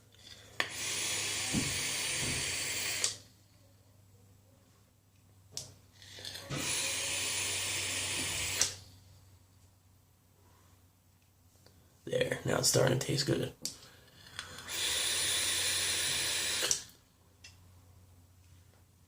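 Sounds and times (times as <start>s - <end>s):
vape coil sizzling and hissing: 0.2s - 3.2s, 6.0s - 8.8s, 14.6s - 16.9s.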